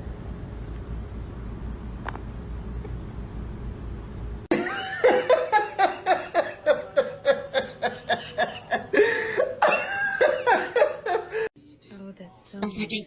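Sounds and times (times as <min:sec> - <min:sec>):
person laughing hard: 0:04.5 - 0:11.5.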